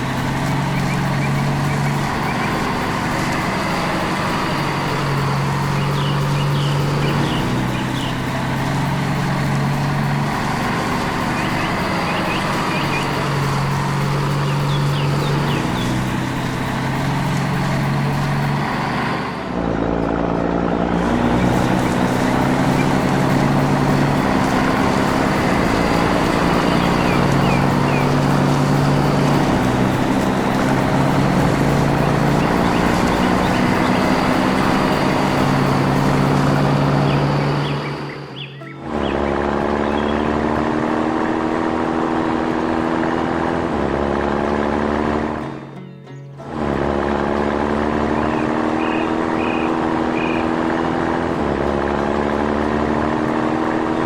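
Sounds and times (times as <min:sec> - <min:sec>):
bird chirps: 0:00.0 - 0:18.6, 0:21.1 - 0:40.6, 0:48.0 - 0:50.8
cartoon engine sound effect: 0:00.0 - 0:41.2.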